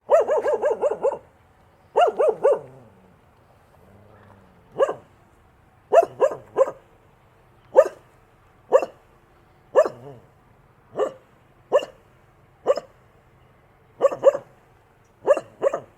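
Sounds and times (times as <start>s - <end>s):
dog barking: 0.0s - 1.3s, 1.9s - 2.9s, 4.7s - 5.1s, 5.9s - 6.8s, 7.7s - 8.1s, 8.7s - 9.0s, 9.7s - 10.2s, 10.9s - 12.0s, 12.6s - 13.0s, 14.0s - 14.6s, 15.2s - 15.9s.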